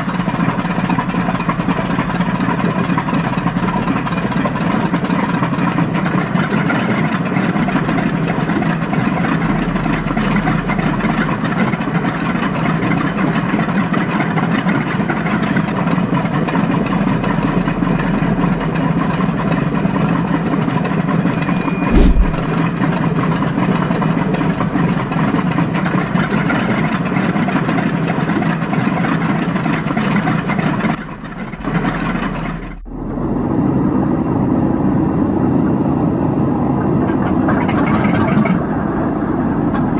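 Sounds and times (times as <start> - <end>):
short sharp sound: 21.4 - 22.8.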